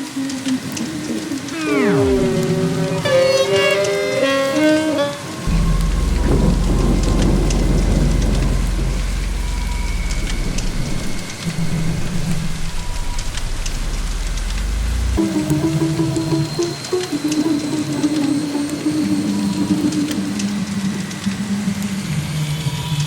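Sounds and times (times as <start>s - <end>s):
rain falling: 0.0s - 22.8s
rolling thunder rumble: 5.5s - 15.5s.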